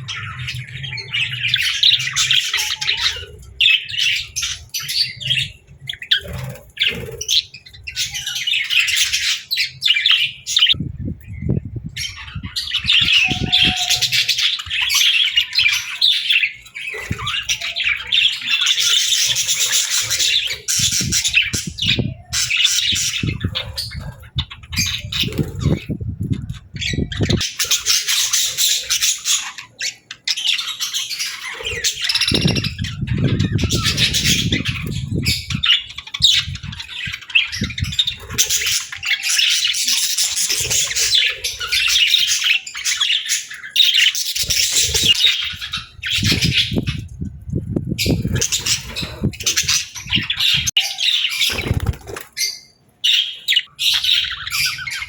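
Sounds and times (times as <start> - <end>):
budgerigar chirping and chattering: 12.0 - 47.0.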